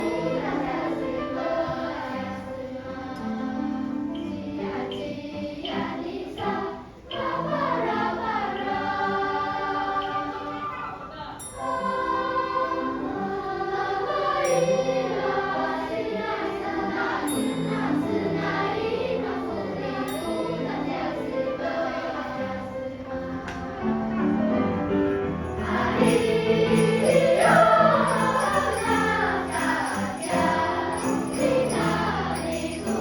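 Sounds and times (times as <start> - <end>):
jingle bells shaking: 0.0 - 0.9, 25.0 - 33.0
choir singing: 0.0 - 33.0
musical accompaniment: 0.0 - 33.0.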